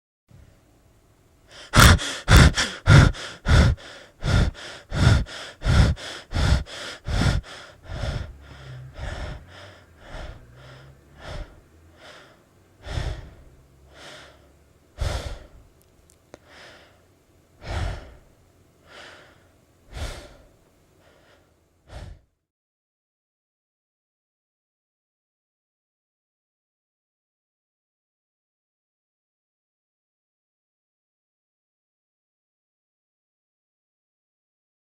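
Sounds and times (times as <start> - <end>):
person breathing hard: 1.5 - 15.7, 16.4 - 22.4.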